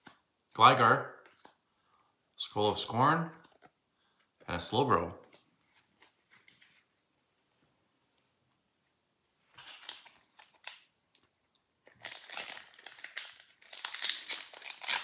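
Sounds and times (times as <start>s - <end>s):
foil wrapper crinkling: 9.6s - 10.9s, 11.9s - 15.0s.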